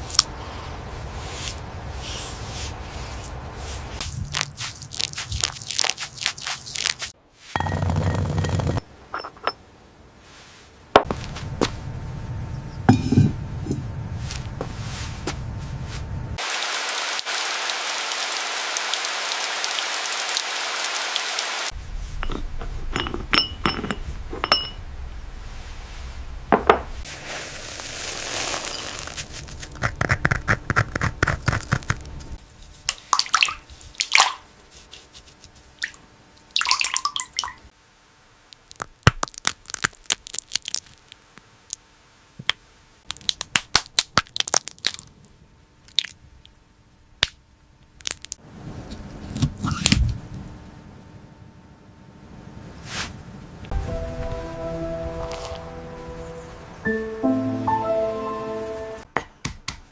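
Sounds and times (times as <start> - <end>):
rustling or pouring noise: 1.1 - 7.5, 27.0 - 34.0, 55.1 - 56.1.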